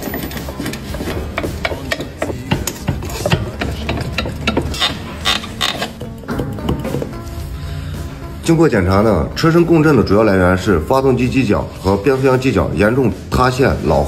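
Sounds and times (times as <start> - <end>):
hand tools clicking on metal: 0.0 - 7.2.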